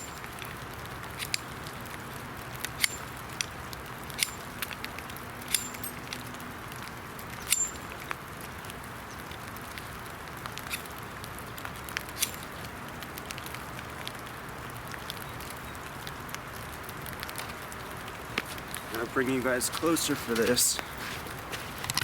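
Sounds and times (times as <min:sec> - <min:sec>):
rain pattering on wet woods: 0:00.0 - 0:22.0
steel knife striking flint: 0:05.5 - 0:06.0, 0:07.5 - 0:07.8.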